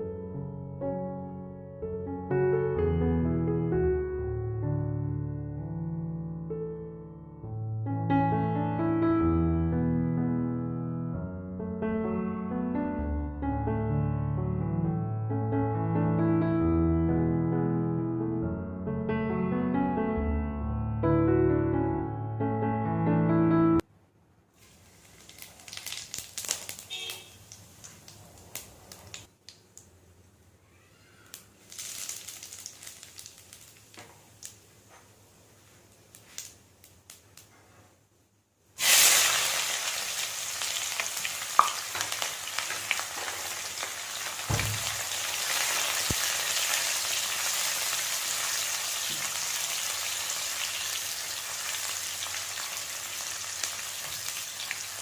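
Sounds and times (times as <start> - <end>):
food sizzling in hot oil: 24.6 - 29.1, 31.6 - 34.5, 38.8 - 55.0.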